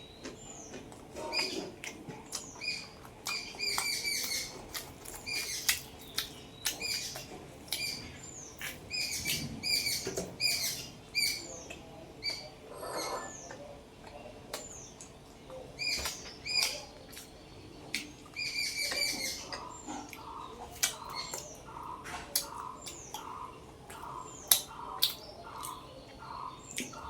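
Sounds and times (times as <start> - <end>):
wet chewing and lip-smacking: 0.2 - 9.4, 16.0 - 27.0.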